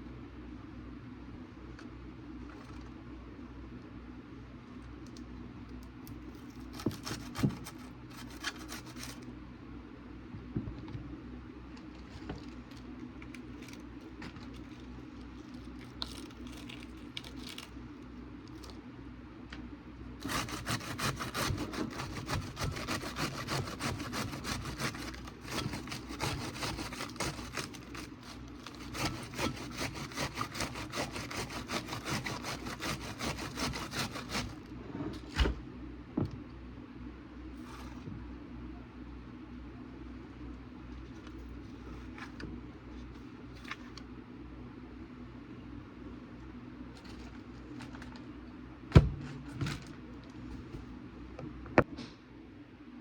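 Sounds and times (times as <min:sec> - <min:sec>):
lettuce rasping on grater: 0:06.7 - 0:09.2, 0:20.2 - 0:34.6.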